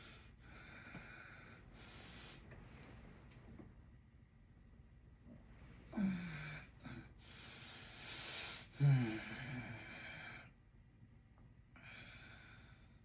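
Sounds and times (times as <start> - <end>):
man snoring: 8.7 - 10.5.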